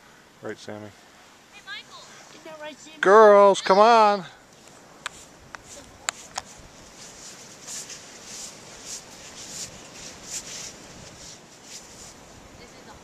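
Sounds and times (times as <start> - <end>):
footsteps crunching through snow: 4.6 - 12.4.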